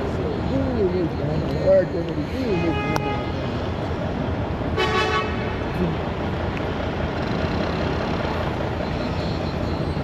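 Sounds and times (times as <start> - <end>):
city street traffic: 0.0 - 10.0
vehicle horn honk: 2.5 - 3.4, 4.8 - 5.6.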